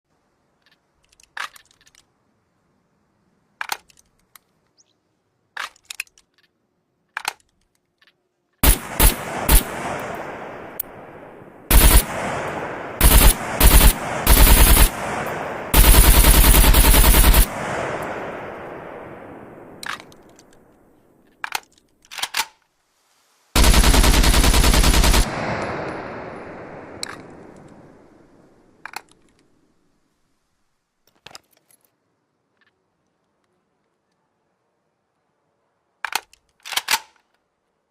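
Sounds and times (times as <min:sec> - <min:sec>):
rifle clicks: 0:00.6 - 0:02.1, 0:03.6 - 0:04.7, 0:05.6 - 0:22.6, 0:23.6 - 0:28.1, 0:28.8 - 0:29.5, 0:36.0 - 0:37.5
rifle gunshots and bursts: 0:08.6 - 0:20.4, 0:23.6 - 0:28.2.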